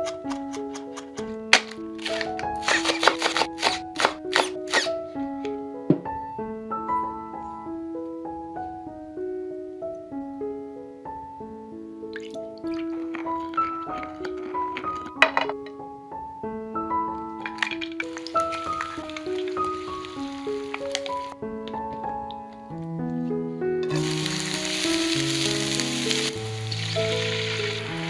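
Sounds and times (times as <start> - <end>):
slow piano music: 0.0 - 28.0
eggs sizzling in a pan: 17.5 - 21.3, 23.9 - 28.0.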